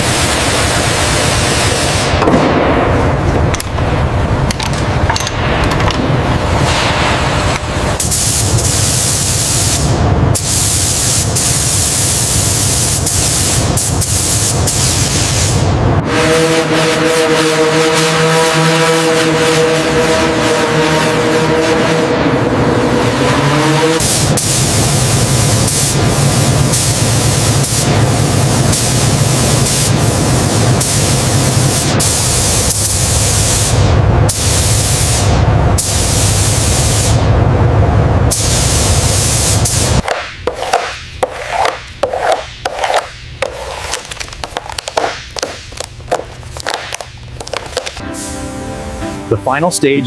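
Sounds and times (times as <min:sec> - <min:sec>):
paint spray gun hissing: 0:10.4 - 0:15.6, 0:24.0 - 0:33.8, 0:34.4 - 0:37.1, 0:38.3 - 0:40.8.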